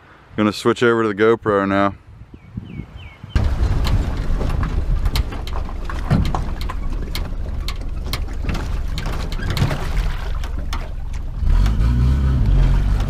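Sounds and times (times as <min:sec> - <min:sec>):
boat engine low rumble: 0:03.4 - 0:13.0.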